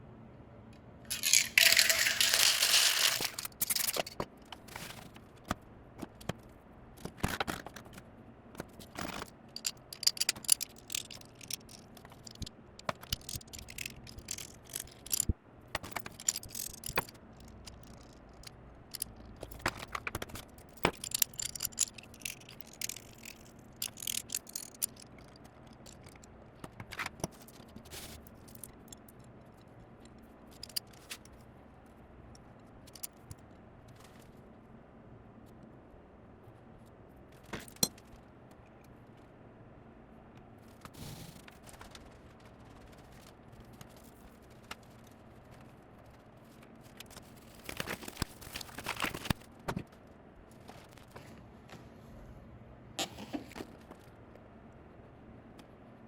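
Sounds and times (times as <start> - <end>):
scraping and rustling: 1.1 - 4.0
small hard objects clinking: 1.1 - 4.2, 9.5 - 15.3, 20.8 - 26.1.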